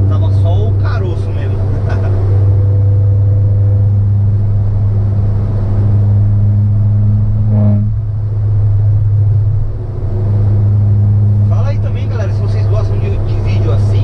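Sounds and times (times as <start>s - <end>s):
car engine droning in cabin: 0.0s - 14.0s.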